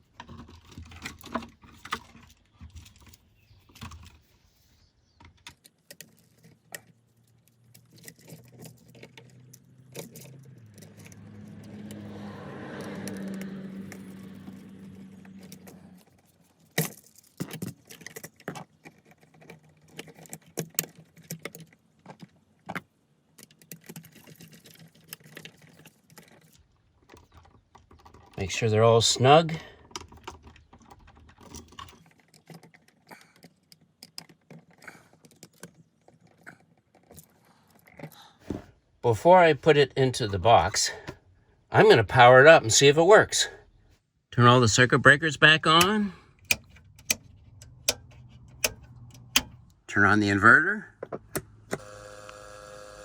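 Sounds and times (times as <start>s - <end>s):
passing vehicle engine hum: 9.1s - 16.2s
metallic clicks of screwdriver and wires: 45.8s - 49.8s.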